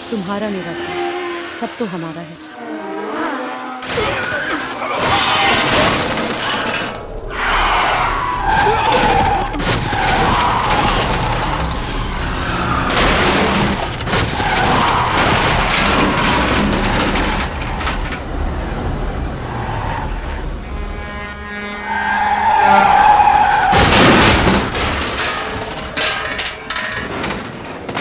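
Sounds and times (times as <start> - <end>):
car noise: 0.0 - 28.0
tyres skidding: 0.0 - 28.0
glass shattering: 3.8 - 18.5, 22.2 - 28.0
crashing impacts: 3.8 - 28.0.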